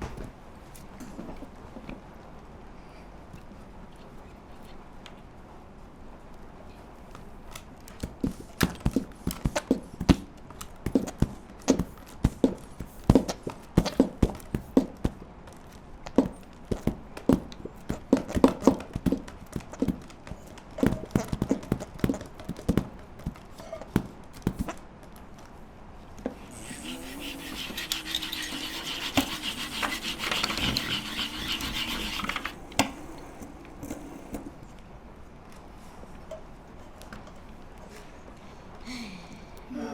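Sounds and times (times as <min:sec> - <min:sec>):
wavering squeak-like tone: 0:26.4 - 0:32.8
rough rubbing rasping noise: 0:26.4 - 0:34.0.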